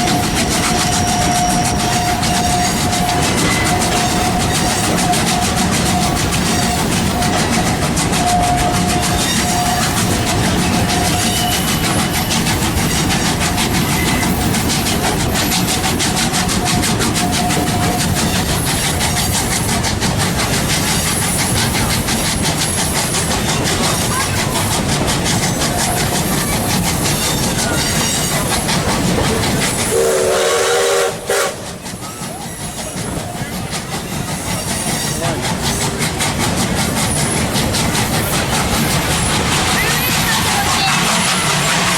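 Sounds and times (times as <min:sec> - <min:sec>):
train whistle blast: 0:00.0 - 0:12.4, 0:16.4 - 0:18.3, 0:29.8 - 0:32.4
train rumble: 0:00.0 - 0:41.9
wheels clacking on rail joints: 0:00.0 - 0:41.9.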